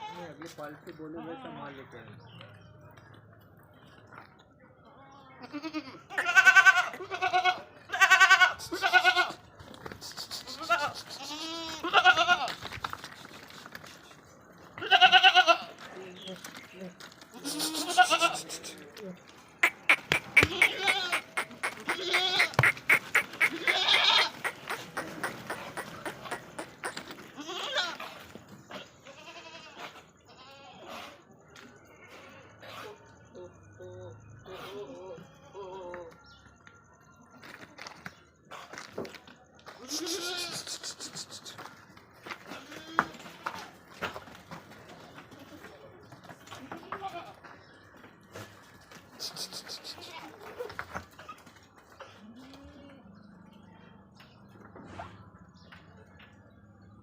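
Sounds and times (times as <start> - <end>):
goats bleating: 5.4 - 9.4, 10.2 - 12.6, 14.8 - 15.8, 17.3 - 18.8, 19.6 - 28.1, 29.0 - 30.9, 39.8 - 41.5.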